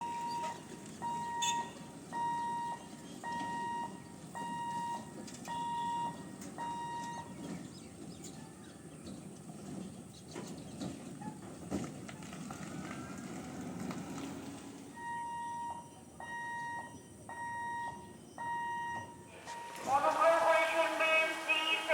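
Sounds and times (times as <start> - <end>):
level-crossing warning beeps: 0.0 - 7.8, 14.9 - 21.9.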